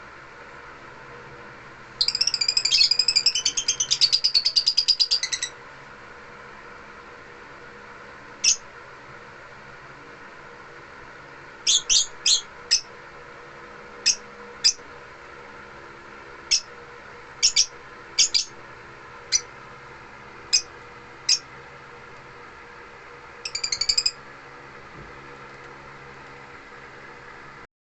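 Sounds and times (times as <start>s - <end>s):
steady low hum: 0.0s - 27.7s
lovebirds chirping: 2.0s - 5.5s, 11.6s - 12.9s, 17.4s - 18.5s, 19.3s - 19.5s, 23.4s - 24.2s.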